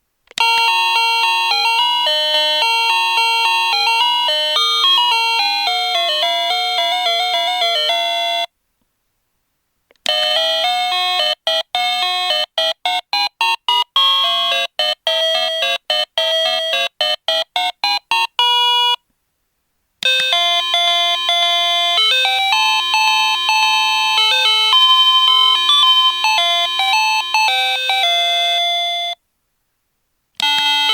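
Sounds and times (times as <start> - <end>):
electronic chime melody: 20.1 - 29.2.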